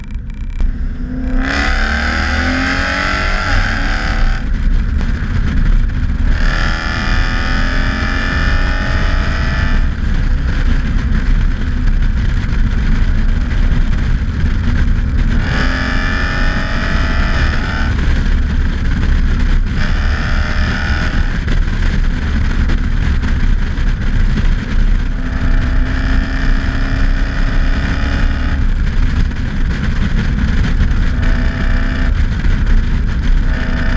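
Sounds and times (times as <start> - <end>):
gearbox whine rising in pitch: 0.0 - 5.6
car engine rumbling: 0.0 - 33.9.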